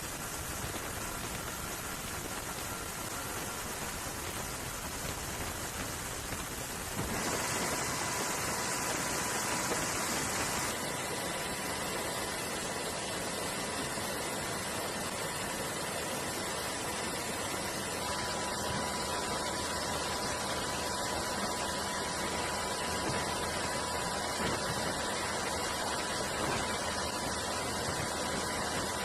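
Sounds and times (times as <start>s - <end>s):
wind and sea rushing: 0.0s - 20.2s
faint steady whine: 0.0s - 29.0s.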